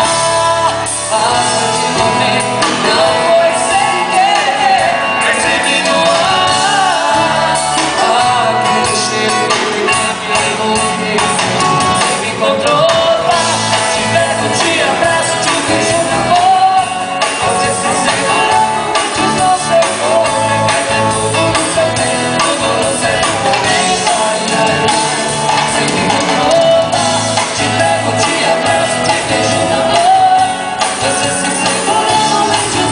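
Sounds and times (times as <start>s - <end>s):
song with band and singer: 0.0s - 32.9s.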